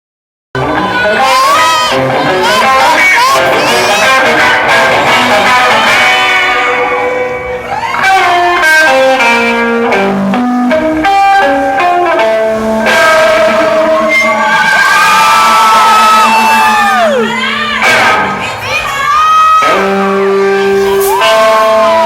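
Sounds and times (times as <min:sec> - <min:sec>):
crowd cheering and screaming: 0:00.6 - 0:08.8, 0:12.8 - 0:22.0
electric guitar melody: 0:00.6 - 0:22.0.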